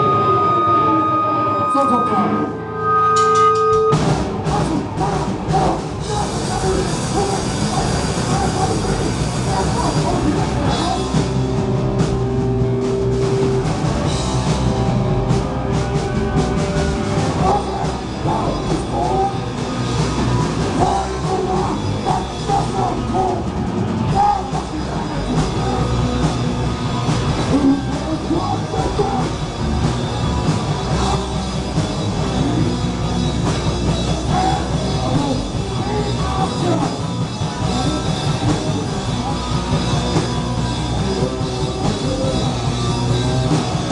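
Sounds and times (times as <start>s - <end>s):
punk rock band playing: 0.0s - 43.9s
person singing: 4.4s - 11.5s, 16.4s - 19.8s, 20.7s - 26.6s, 27.4s - 29.6s, 30.7s - 32.9s, 33.9s - 43.9s.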